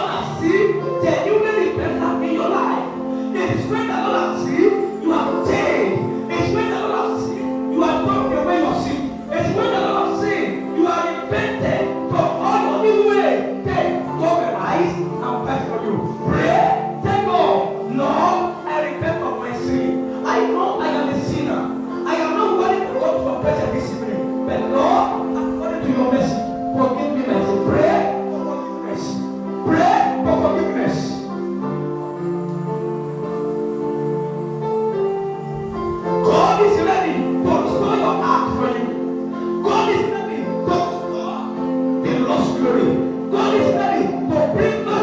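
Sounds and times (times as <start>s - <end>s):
congregation singing: 0.0s - 45.0s
keyboard holding chords: 0.0s - 45.0s
voices singing: 31.8s - 45.0s.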